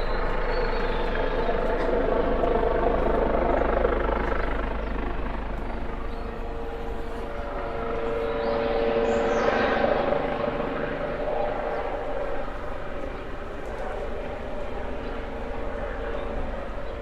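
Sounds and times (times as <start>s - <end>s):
helicopter drone: 0.0s - 17.0s.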